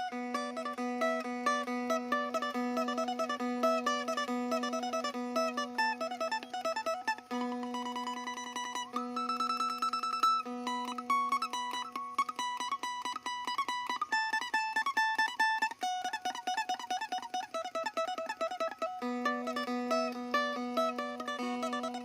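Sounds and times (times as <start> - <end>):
plucked lute melody: 0.0 - 22.0.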